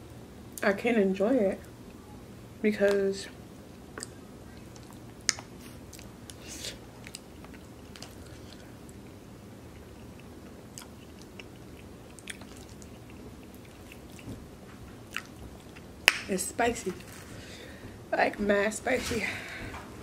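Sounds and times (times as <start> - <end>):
faint low hum: 0.0 - 20.0
close chewing mouth sounds: 4.0 - 15.9.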